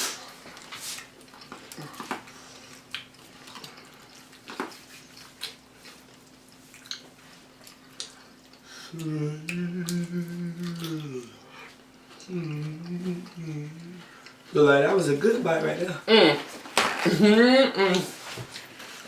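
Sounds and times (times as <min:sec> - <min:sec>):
chewing crunchy food: 0:00.1 - 0:14.6
person humming mmm: 0:08.7 - 0:14.2, 0:17.0 - 0:18.2.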